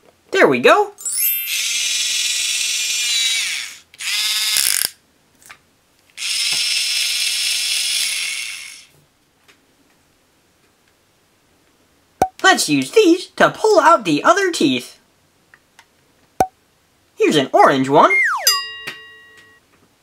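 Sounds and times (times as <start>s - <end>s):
toy drill whirring: 1.1s - 5.0s, 6.2s - 8.9s.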